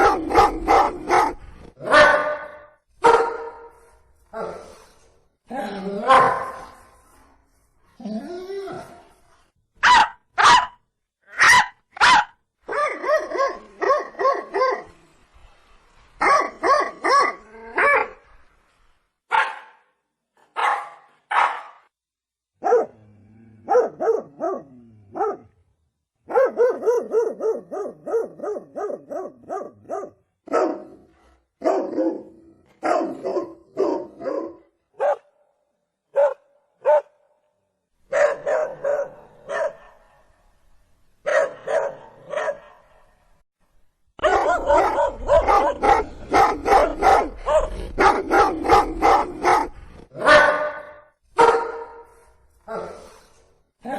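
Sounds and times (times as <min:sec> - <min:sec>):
dog barking: 0:00.0 - 0:03.8, 0:06.1 - 0:06.8, 0:09.8 - 0:14.9, 0:16.2 - 0:18.2, 0:19.3 - 0:19.9, 0:20.5 - 0:21.9, 0:22.6 - 0:23.0, 0:23.6 - 0:25.5, 0:26.3 - 0:31.0, 0:31.6 - 0:35.4, 0:36.1 - 0:37.2, 0:38.1 - 0:40.2, 0:41.2 - 0:43.0, 0:44.2 - 0:52.2.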